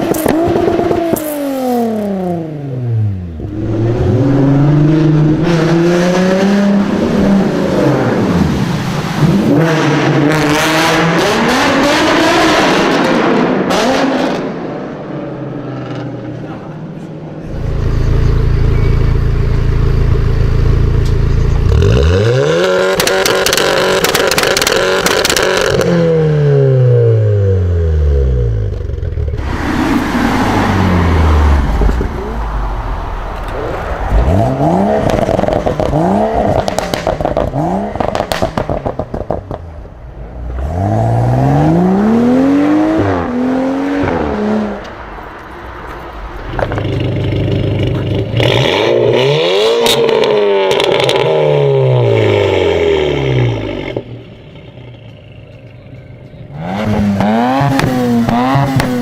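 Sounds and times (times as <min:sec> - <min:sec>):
car engine idling and revving: 0:00.0 - 0:59.0
exhaust crackles and pops: 0:17.0 - 0:22.0, 0:22.6 - 0:25.9, 0:31.6 - 0:40.4, 0:44.0 - 0:48.6, 0:49.8 - 0:51.5, 0:53.7 - 0:59.0.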